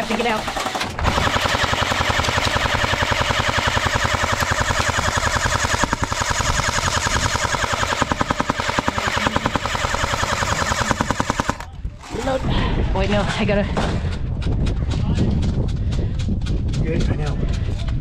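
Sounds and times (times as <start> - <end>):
airsoft gun full-auto burst: 0.6 - 11.7.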